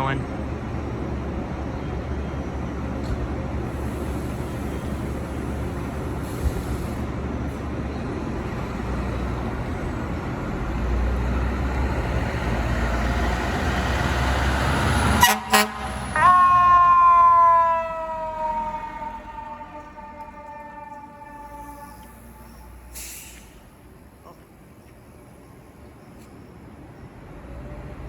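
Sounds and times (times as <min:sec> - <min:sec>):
truck engine rumble: 0:00.0 - 0:28.0
air horn blasts: 0:15.2 - 0:16.8, 0:18.8 - 0:22.9
siren tone falling in pitch: 0:16.2 - 0:22.9.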